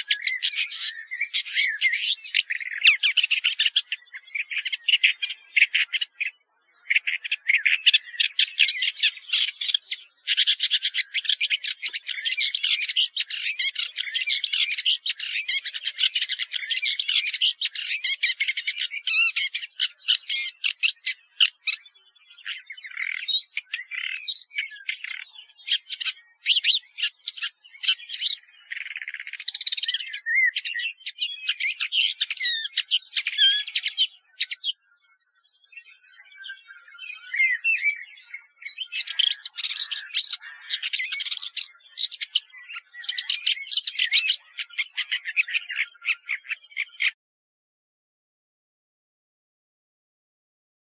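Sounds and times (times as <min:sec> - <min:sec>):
bird singing chattering notes: 0:00.0 - 0:47.2.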